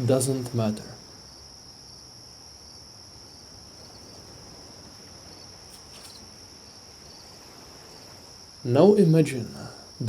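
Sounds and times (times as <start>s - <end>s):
insect chorus: 0.0s - 10.0s.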